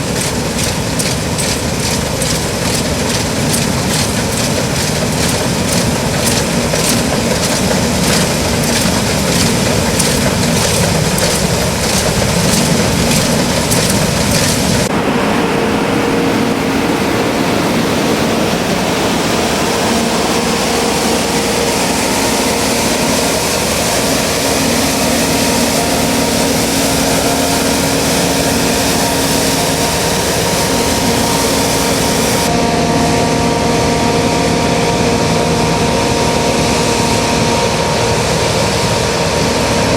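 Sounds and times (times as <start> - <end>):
rhythmic clatter: 0.0 - 15.0
combine harvester engine: 0.0 - 39.9
held whine: 0.0 - 39.9.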